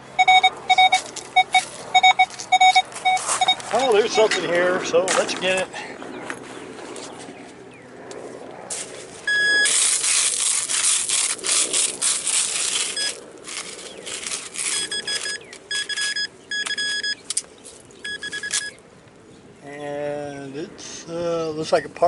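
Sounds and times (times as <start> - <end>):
metal detector beeps: 0.2 - 4.4, 9.3 - 9.8, 12.8 - 13.2, 14.6 - 17.4, 18.0 - 18.8
digging tool scraping soil: 8.7 - 16.2.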